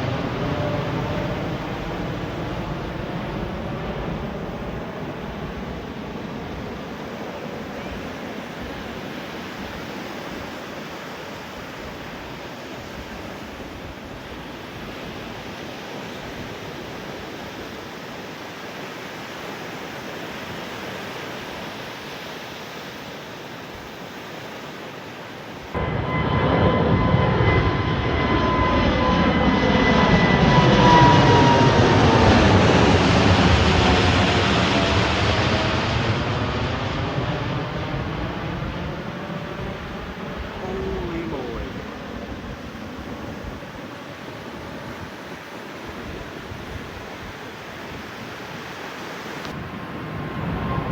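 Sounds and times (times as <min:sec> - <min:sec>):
distant jet rumble: 0:00.0 - 0:17.4, 0:25.4 - 0:48.6
jet passing low overhead: 0:00.0 - 0:50.9.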